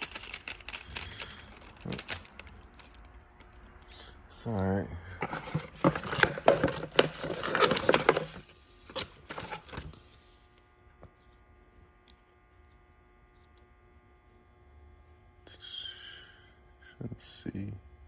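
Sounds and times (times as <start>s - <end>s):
handling rustling and scraping: 0.0s - 3.0s, 5.2s - 10.5s
faint steady hum: 0.0s - 18.0s.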